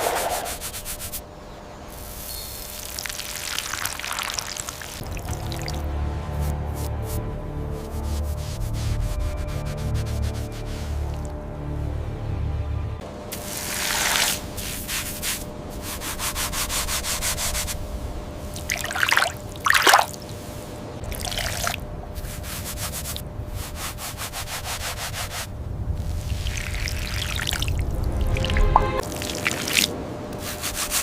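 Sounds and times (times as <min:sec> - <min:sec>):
abrasive rubbing on hard surface: 0:00.0 - 0:01.2, 0:06.3 - 0:11.3.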